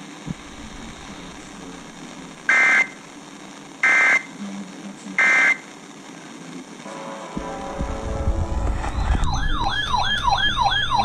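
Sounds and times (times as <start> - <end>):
radio static: 0.0 - 11.0
buzzy digital data tones: 0.3 - 4.4, 6.8 - 11.0.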